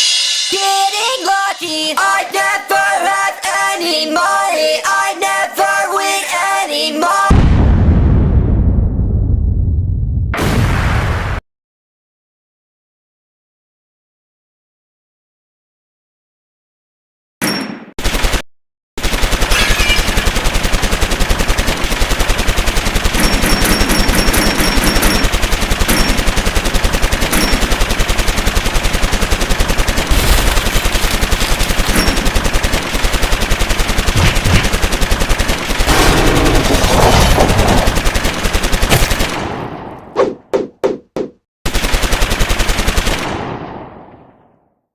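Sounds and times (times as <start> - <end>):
machine-gun fire: 18.0 - 18.4, 19.0 - 44.6.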